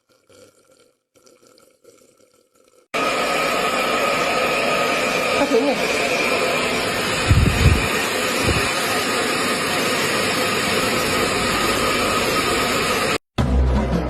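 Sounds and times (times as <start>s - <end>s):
mechanical rushing noise: 7.2s - 8.7s.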